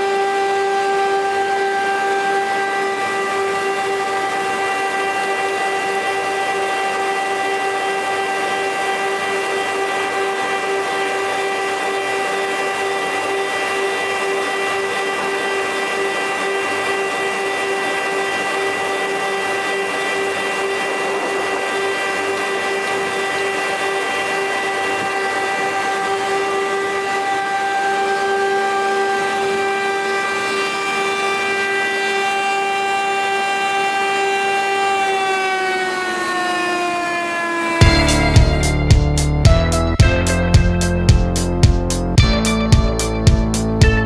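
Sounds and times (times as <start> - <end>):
woodworking machine whining: 0.0 - 41.6
machine spinning down: 37.8 - 43.2.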